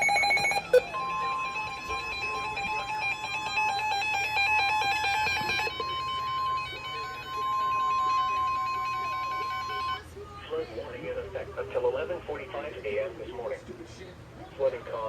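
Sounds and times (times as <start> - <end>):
electronic alert beeps: 0.0 - 2.6
long steady alarm tone: 0.0 - 10.1.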